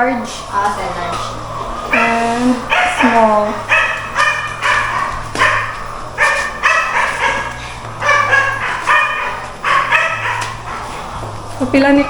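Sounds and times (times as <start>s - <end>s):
dog barking: 1.9s - 12.0s.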